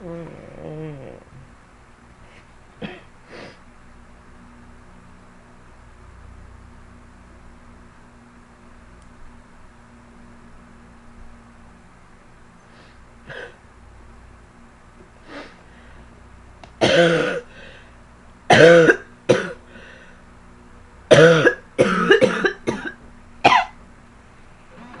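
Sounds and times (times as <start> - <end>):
girl coughing hard: 2.8 - 3.1, 16.8 - 17.5, 18.5 - 19.6, 21.1 - 23.8.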